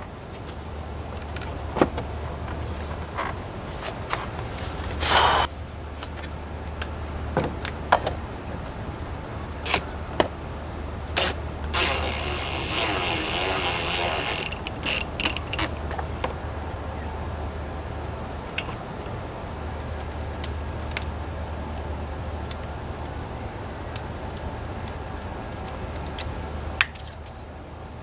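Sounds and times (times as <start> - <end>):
ratchet clatter: 11.2 - 16.0
hand tools clicking on metal: 11.2 - 16.1.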